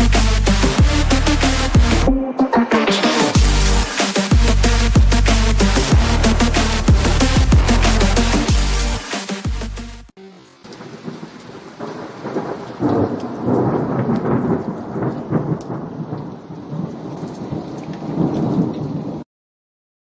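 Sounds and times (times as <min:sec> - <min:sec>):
steady rain: 0:00.0 - 0:02.1, 0:10.2 - 0:19.2
thunder rumbling: 0:10.7 - 0:19.2.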